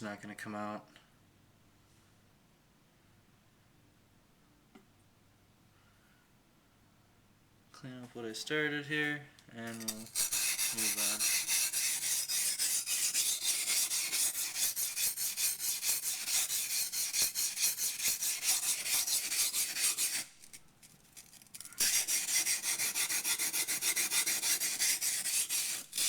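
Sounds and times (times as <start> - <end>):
knife scraping on a whetstone: 9.7 - 26.0.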